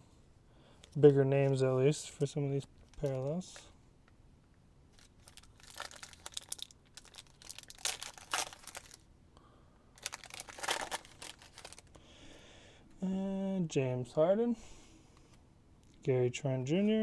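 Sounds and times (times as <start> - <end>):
wrapper crinkling and tearing: 4.9 - 9.0, 10.0 - 12.0.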